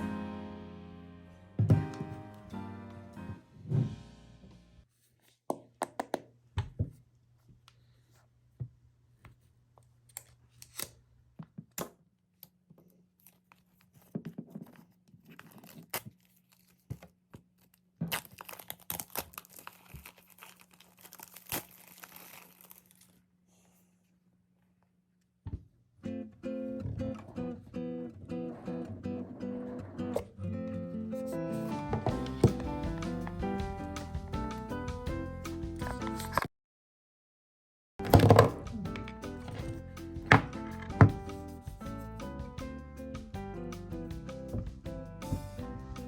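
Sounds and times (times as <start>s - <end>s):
wrapping tearing and crinkling: 12.9s - 23.7s.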